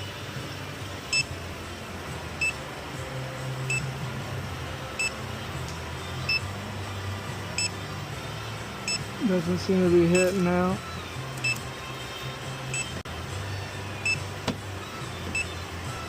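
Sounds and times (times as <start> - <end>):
leak detector beeping: 5.0 - 5.2, 7.6 - 7.8, 8.8 - 9.1, 10.1 - 10.4.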